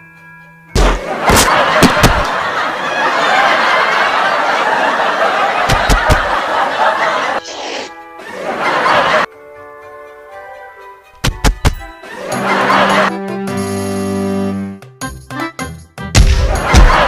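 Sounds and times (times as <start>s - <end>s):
canned audience laughter: 0.9s - 7.5s, 8.2s - 9.3s, 12.0s - 13.2s, 16.4s - 17.0s
sharp thumps: 5.7s - 6.3s.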